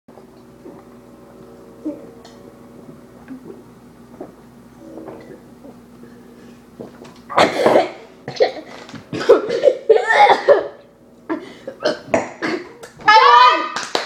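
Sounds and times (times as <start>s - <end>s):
child coughing and sputtering: 7.3s - 12.8s.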